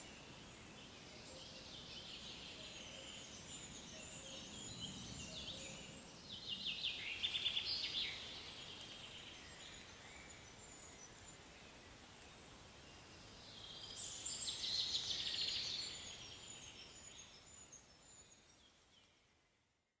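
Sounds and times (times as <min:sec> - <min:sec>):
songbirds trilling and chirping: 0:00.0 - 0:19.2.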